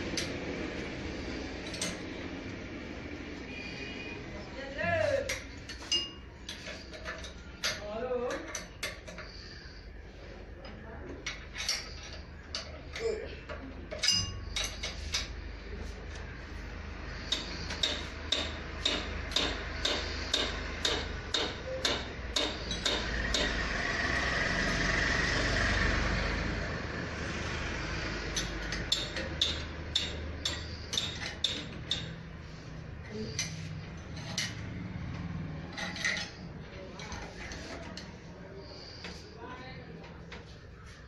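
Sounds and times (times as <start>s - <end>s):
metallic taps from hand tools: 17.3s - 23.6s.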